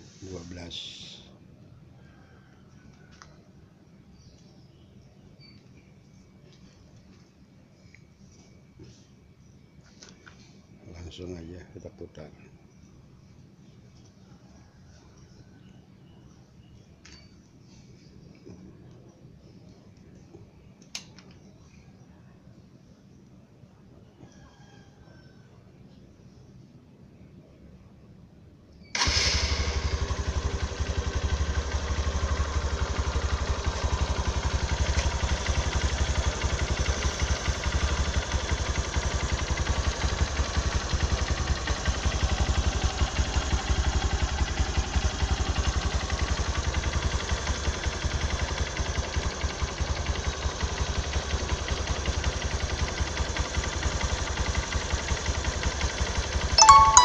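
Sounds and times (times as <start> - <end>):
motorcycle engine running: 29.4 - 56.6.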